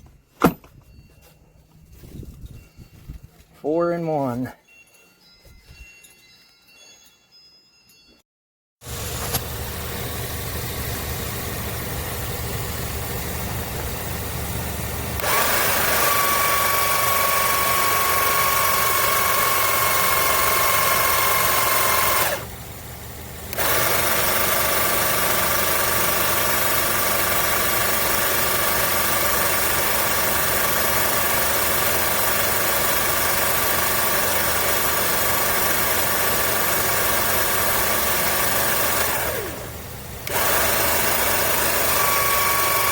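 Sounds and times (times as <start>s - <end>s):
electric motor humming and whining: 8.9s - 22.6s, 23.4s - 42.9s.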